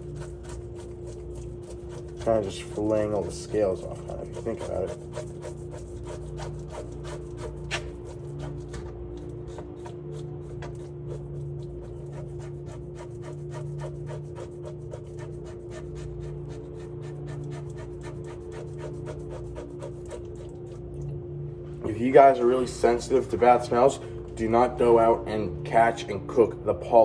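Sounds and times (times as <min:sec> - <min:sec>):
knife scraping fish scales: 0:00.0 - 0:20.8
steady low hum: 0:00.0 - 0:27.0.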